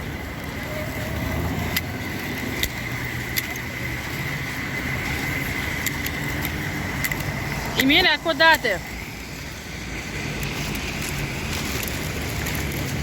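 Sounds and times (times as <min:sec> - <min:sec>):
car engine rumbling: 0:00.0 - 0:13.0
sharp ticks: 0:01.6 - 0:09.7.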